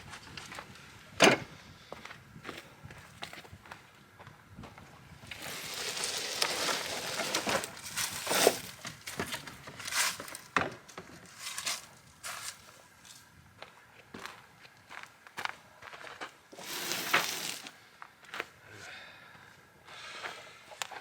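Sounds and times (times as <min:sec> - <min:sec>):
table scraping over ground: 0:05.2 - 0:13.2, 0:16.5 - 0:17.8.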